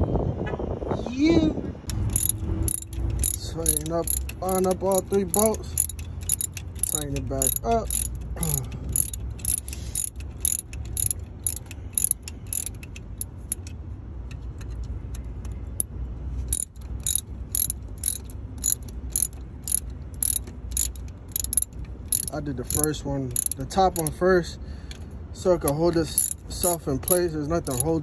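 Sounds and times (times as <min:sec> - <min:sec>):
ratchet wrench clicking: 0:01.8 - 0:15.9, 0:16.5 - 0:28.0.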